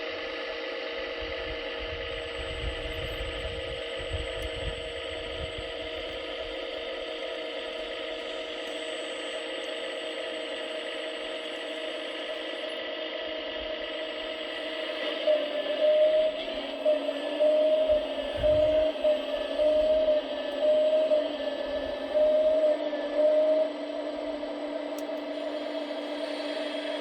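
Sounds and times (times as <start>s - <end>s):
hydraulic pump whining: 13.5s - 27.0s.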